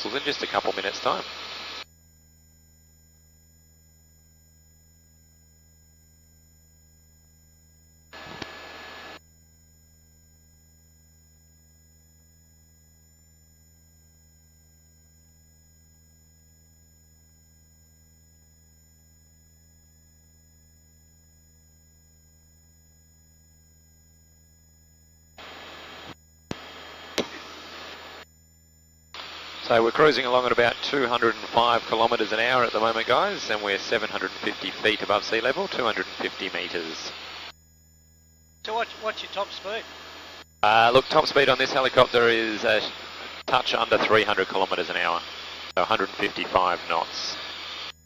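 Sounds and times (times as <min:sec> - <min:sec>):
intercom hum: 0:08.2 - 0:09.2, 0:25.4 - 0:28.3, 0:29.1 - 0:37.5, 0:38.6 - 0:48.0.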